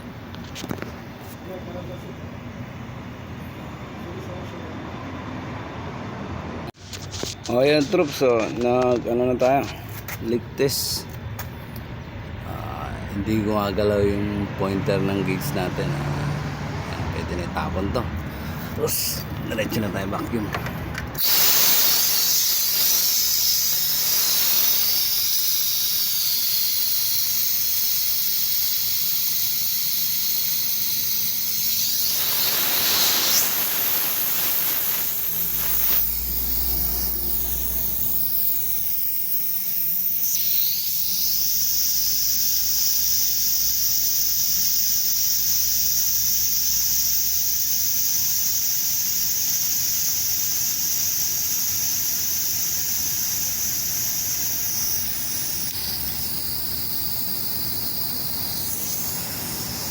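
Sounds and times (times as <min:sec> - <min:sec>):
pressurised gas venting hiss: 0:18.3 - 0:59.9.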